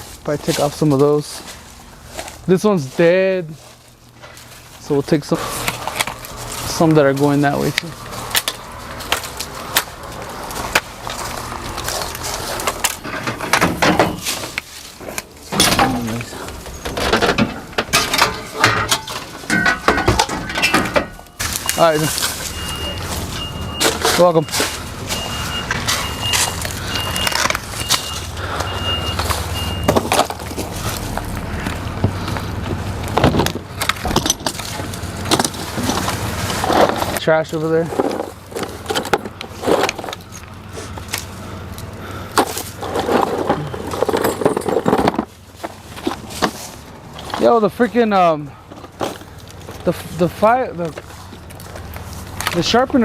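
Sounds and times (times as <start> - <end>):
reversing alarm beeping: 20.4 - 30.2
vehicle engine running: 21.1 - 47.4
branches snapping and cracking: 21.3 - 24.8.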